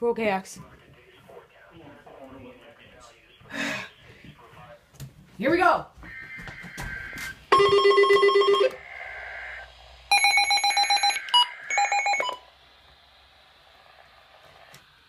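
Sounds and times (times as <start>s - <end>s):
trilling electronic alarm: 6.0s - 12.5s
faint hiss: 12.4s - 15.0s.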